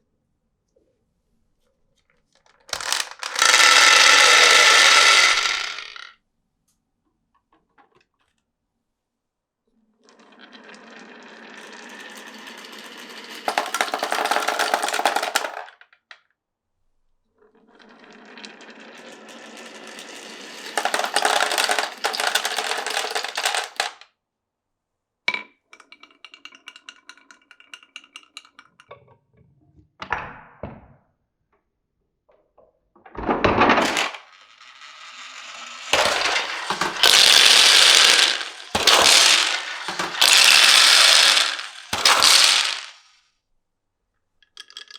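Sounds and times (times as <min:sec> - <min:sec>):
marbles rolling on wooden run: 0:02.6 - 0:06.1, 0:10.2 - 0:15.9, 0:17.8 - 0:24.0, 0:33.2 - 0:43.1, 0:44.4 - 0:44.9
loud clattering: 0:02.7 - 0:06.1, 0:13.4 - 0:15.7, 0:20.6 - 0:24.0, 0:35.9 - 0:43.0.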